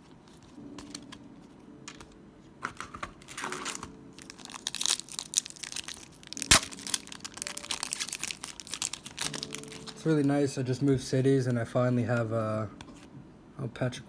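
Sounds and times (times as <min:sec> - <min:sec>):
cards being handled: 0:00.0 - 0:10.3
foil wrapper crinkling: 0:02.7 - 0:10.4.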